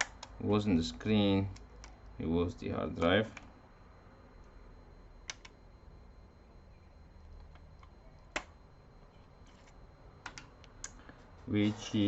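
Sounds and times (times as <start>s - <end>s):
small laptop parts clicking: 0.0s - 0.4s, 1.5s - 2.1s, 5.2s - 5.6s, 7.3s - 8.6s, 9.5s - 11.1s.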